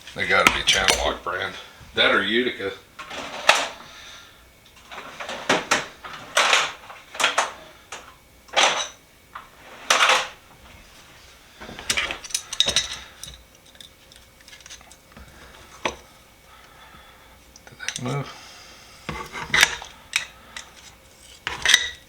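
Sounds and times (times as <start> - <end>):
metal hand tools clinking: 11.9 - 15.1.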